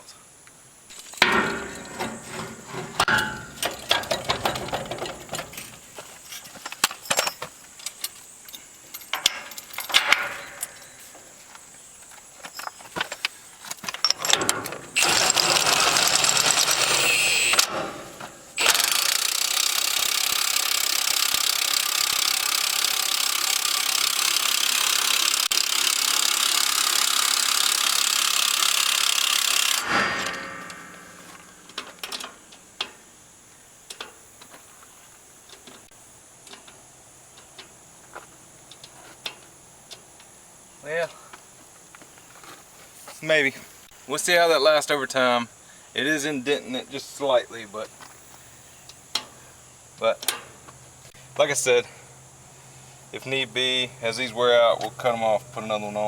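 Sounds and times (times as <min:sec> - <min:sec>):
metal clinks and clatter: 0:00.9 - 0:11.4, 0:12.4 - 0:17.0
impact wrench running: 0:14.1 - 0:32.1.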